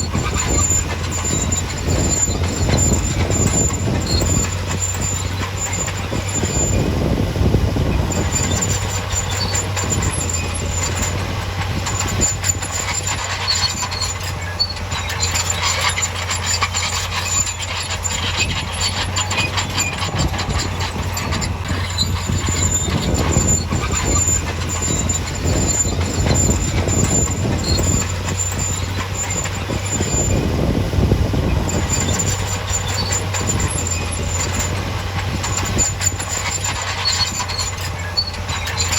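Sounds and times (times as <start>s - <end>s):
thin high squeal: 0.0s - 7.0s, 7.8s - 30.7s, 31.3s - 38.9s
bulldozer diesel engine: 0.0s - 38.9s.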